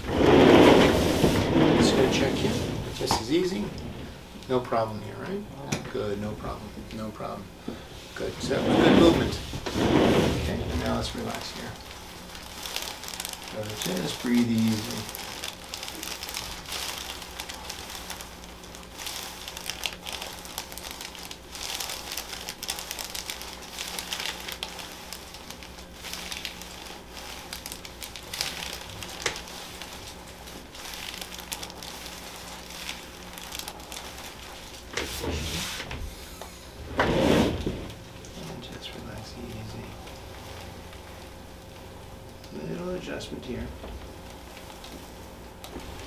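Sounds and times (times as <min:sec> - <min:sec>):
faint steady hum: 0:00.0 - 0:46.0
handling noise crinkling: 0:08.2 - 0:35.9.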